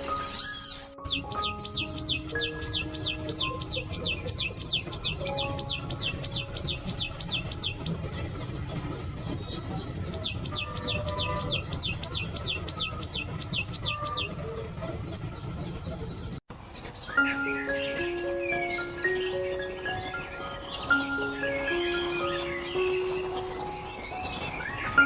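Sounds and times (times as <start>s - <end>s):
bird whistling high notes: 0.0s - 4.0s
soft sustained music tones: 0.0s - 13.7s, 16.6s - 25.0s.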